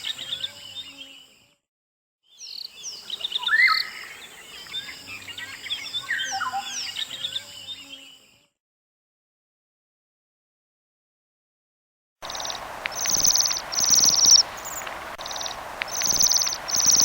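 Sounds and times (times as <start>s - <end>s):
birds singing and chirping: 2.3s - 8.1s, 12.2s - 17.0s.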